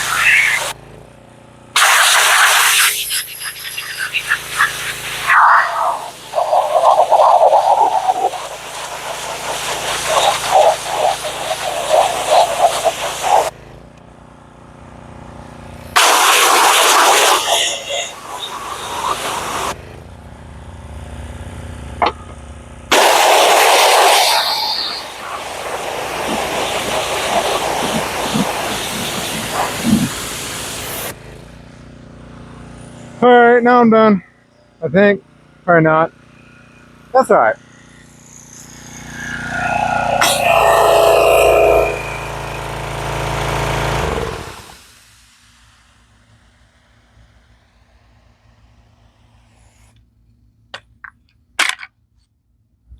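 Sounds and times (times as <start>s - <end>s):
pressure washer spray hissing: 0.0s - 0.7s, 1.8s - 13.5s, 16.0s - 19.8s, 22.9s - 31.2s
machine hum: 36.1s - 44.9s.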